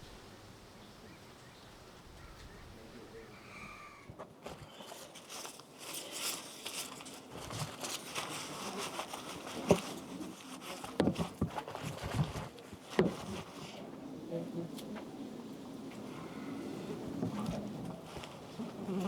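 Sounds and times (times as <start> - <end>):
rustling handling noise: 4.1 - 19.0.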